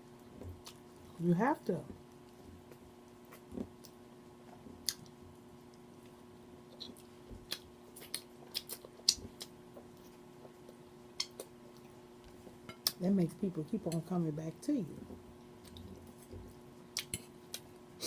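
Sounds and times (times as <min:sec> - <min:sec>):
faint steady hum: 0:00.0 - 0:18.0
person chewing crispy food: 0:02.1 - 0:12.8.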